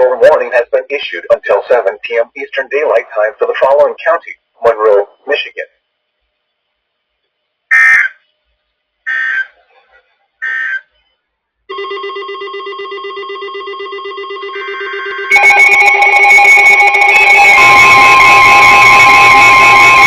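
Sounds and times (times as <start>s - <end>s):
louder alarm in different pitch: 11.7s - 20.0s
pulsing electronic alarm tone: 11.7s - 20.0s
digital data tone bursts: 12.9s - 20.0s.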